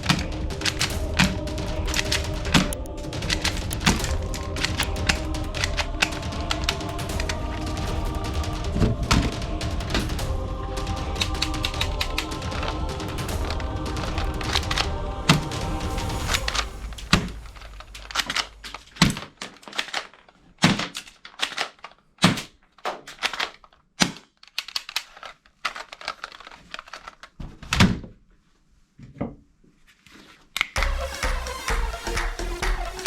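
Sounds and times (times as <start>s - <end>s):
plastic toy guns clicking: 19.0s - 27.4s.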